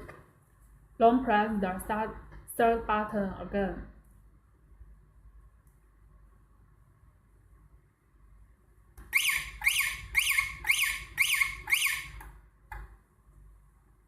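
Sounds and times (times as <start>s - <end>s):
car alarm chirps: 9.1s - 12.2s.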